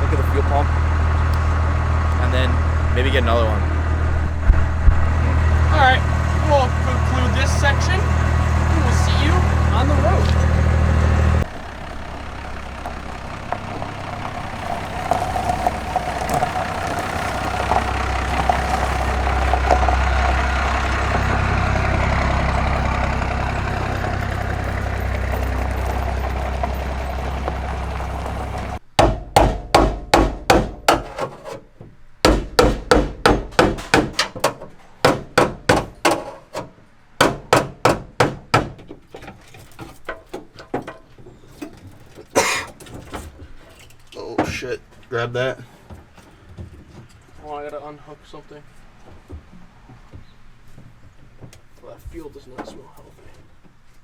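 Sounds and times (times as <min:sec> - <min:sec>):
vehicle engine hum: 0:00.0 - 0:31.1
road noise: 0:00.0 - 0:54.0
sharp knocks: 0:29.0 - 0:39.0.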